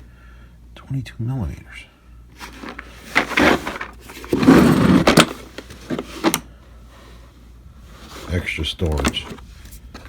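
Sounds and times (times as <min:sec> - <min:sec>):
plastic case scraping and sliding: 0:02.4 - 0:06.4, 0:07.9 - 0:10.0.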